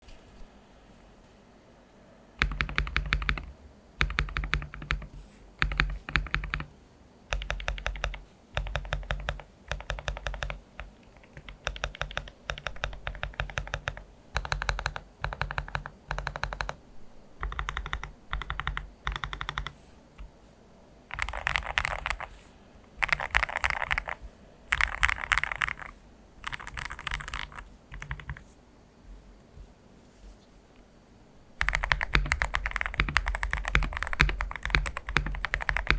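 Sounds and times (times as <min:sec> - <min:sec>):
mechanical keyboard typing: 0:02.4 - 0:06.7, 0:07.3 - 0:16.8, 0:17.4 - 0:19.8, 0:21.1 - 0:28.4, 0:31.6 - 0:35.9.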